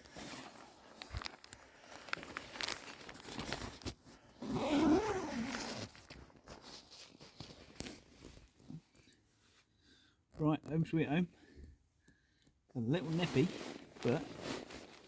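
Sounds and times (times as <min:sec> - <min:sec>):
rustling crackling handling noises: 0:00.0 - 0:09.6, 0:12.9 - 0:15.0.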